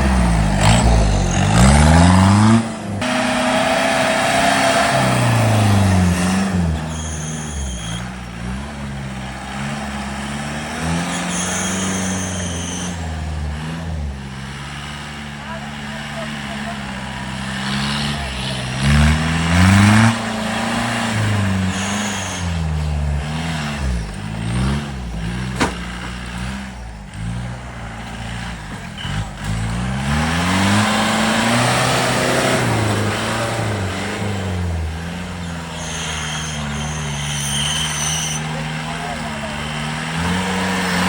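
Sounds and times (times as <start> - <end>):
off-road engine revving: 0.0 - 41.0
sharp crack: 25.3 - 26.4.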